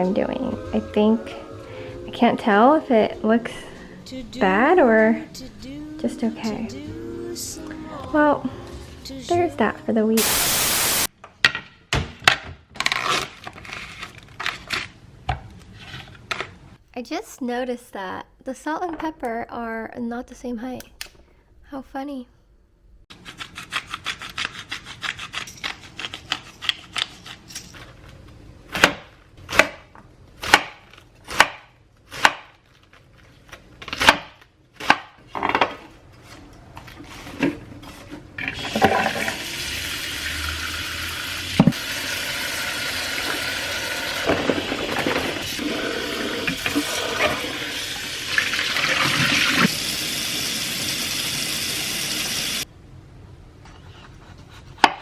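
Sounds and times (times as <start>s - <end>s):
knife chopping on cutting board: 28.7s - 32.6s
running tap water: 38.4s - 52.6s.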